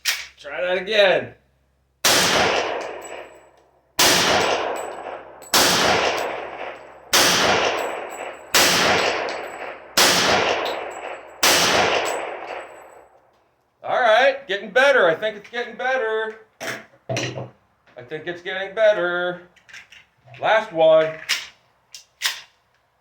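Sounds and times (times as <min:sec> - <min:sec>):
pistol shots echoing: 0:02.0 - 0:13.1.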